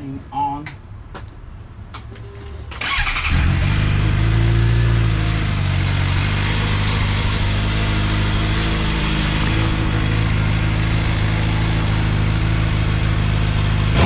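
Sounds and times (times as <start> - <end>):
motorcycle starter cranking: 2.5 - 3.8
motorcycle engine idling: 2.8 - 14.0.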